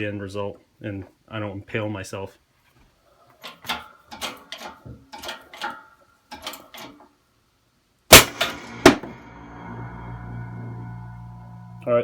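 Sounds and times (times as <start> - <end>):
hydraulic press creaking clicks: 3.4 - 7.0
sharp metal clank: 8.1 - 11.9
loud bang: 8.1 - 12.0.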